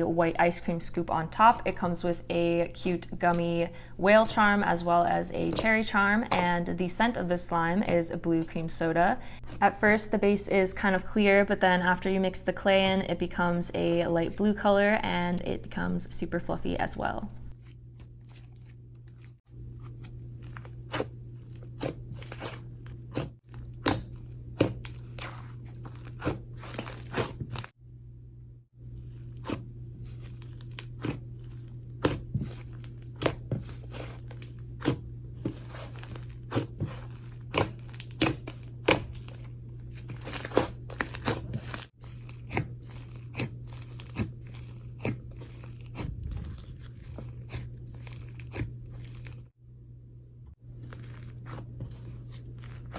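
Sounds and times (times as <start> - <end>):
steady low hum: 0.0 - 52.9
hands squishing slime: 17.6 - 27.7, 29.0 - 49.4, 50.9 - 52.9.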